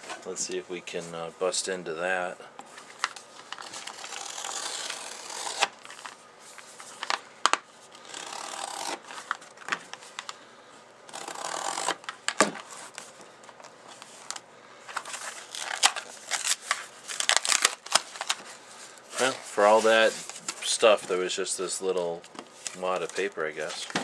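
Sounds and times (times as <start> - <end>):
plastic packaging rustling and crinkling: 11.9 - 21.4, 22.2 - 24.0.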